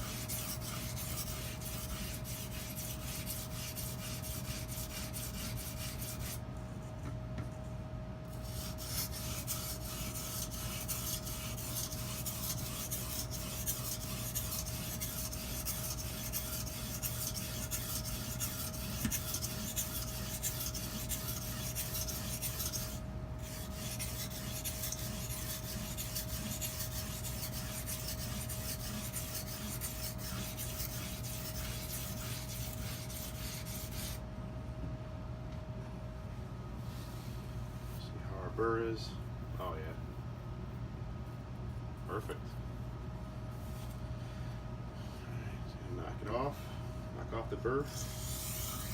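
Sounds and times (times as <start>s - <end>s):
sharpening stone rasping on knife: 0.0s - 6.4s, 8.4s - 34.2s, 47.9s - 48.9s.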